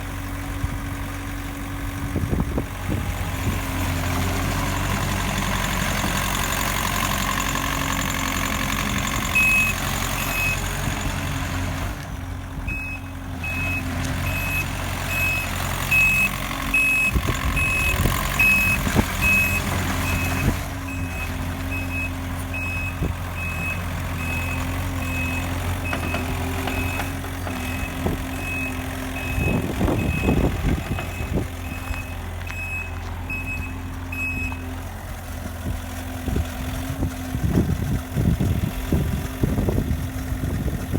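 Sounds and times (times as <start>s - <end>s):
diesel engine running: 0.0s - 40.9s
backup alarm beeping: 9.2s - 10.7s, 12.7s - 34.6s.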